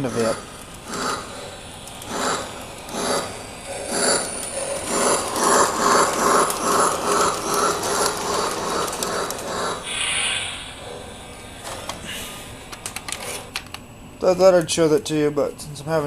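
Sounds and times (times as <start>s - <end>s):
model train clattering: 0.0s - 9.9s.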